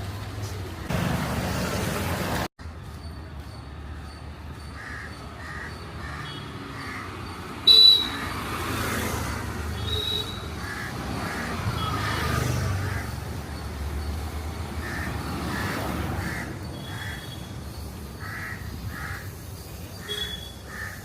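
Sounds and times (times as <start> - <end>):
street traffic rumble: 0.0 - 21.0
crows cawing: 4.8 - 7.2, 10.6 - 13.2, 14.8 - 17.3, 18.2 - 19.4, 20.0 - 21.0.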